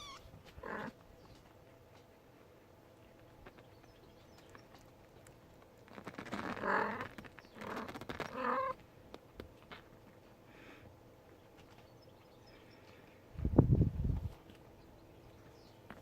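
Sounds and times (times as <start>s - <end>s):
kitten meowing: 0.0s - 0.4s.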